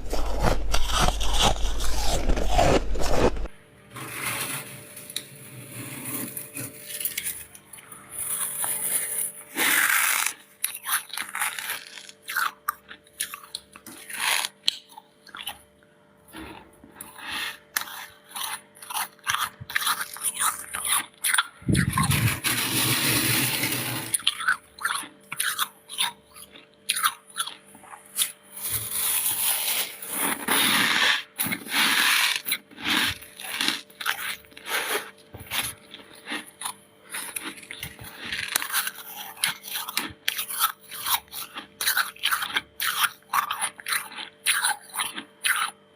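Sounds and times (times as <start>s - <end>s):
crunching frost chunks: 0.0s - 4.7s.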